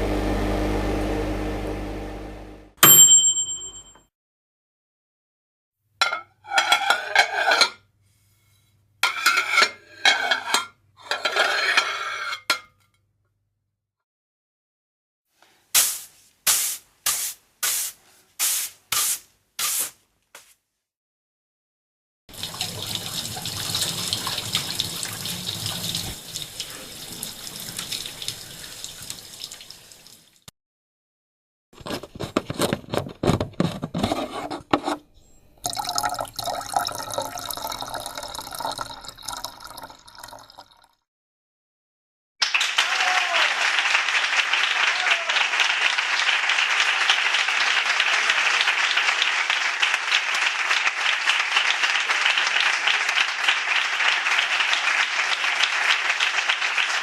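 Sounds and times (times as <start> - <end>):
running water: 22.3 - 30.5, 35.7 - 40.8
applause: 42.4 - 57.0.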